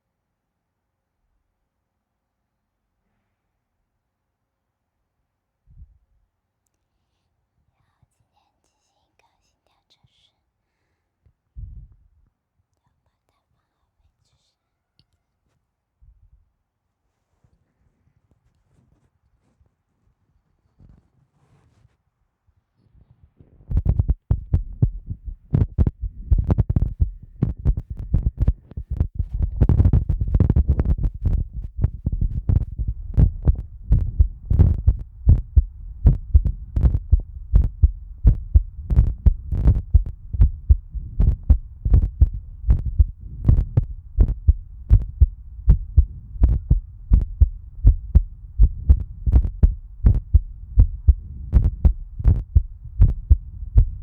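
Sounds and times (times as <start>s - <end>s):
heartbeat thumps: 23.7s - 54.0s.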